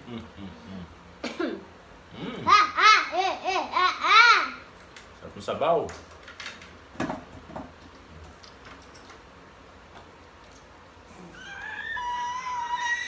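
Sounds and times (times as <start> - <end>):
child squealing: 11.2 - 13.0.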